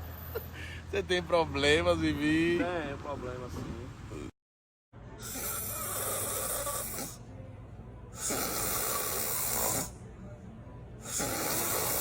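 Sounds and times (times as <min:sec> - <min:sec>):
woman snoring: 0:05.2 - 0:07.2, 0:08.2 - 0:10.0, 0:11.0 - 0:12.0.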